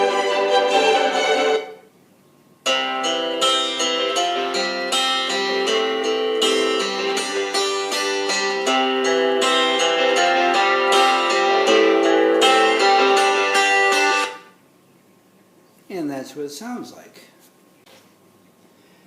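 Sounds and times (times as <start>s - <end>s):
thin music from small speaker: 0.0s - 1.9s, 2.7s - 14.5s.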